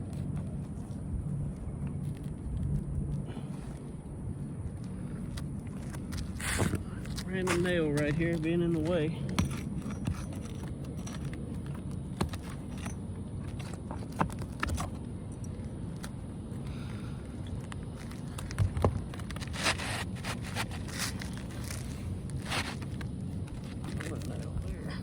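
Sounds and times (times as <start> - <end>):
low rumble: 0.0 - 7.5
scraping on roof shingles: 18.0 - 24.1.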